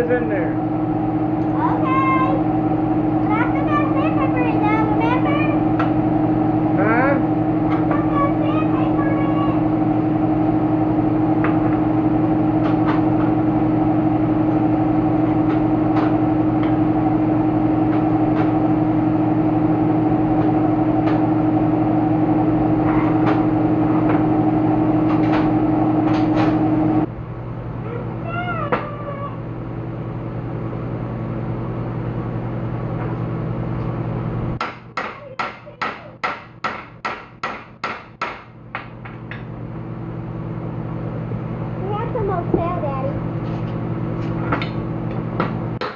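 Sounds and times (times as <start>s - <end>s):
machine motor running: 0.0s - 34.6s.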